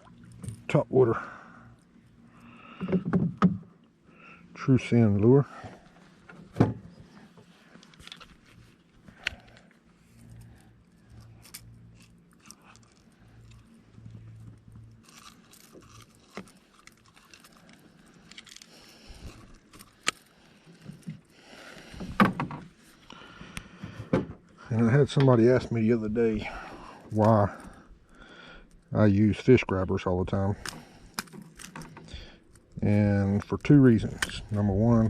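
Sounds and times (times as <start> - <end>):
fishing tackle clicking and knocking: 30.6 - 32.1.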